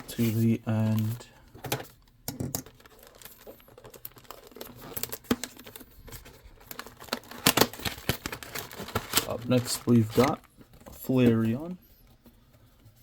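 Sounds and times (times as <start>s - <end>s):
packaging crinkling and rustling: 0.0s - 11.8s.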